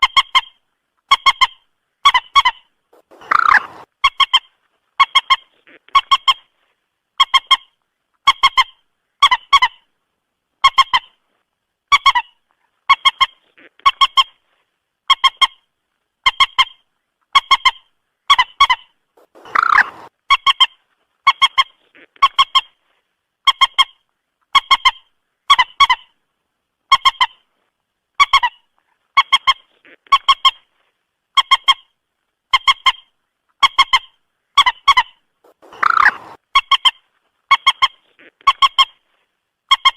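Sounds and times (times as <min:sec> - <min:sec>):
moorhen calls: 0:01.1 - 0:06.5, 0:17.4 - 0:20.7, 0:33.7 - 0:39.0.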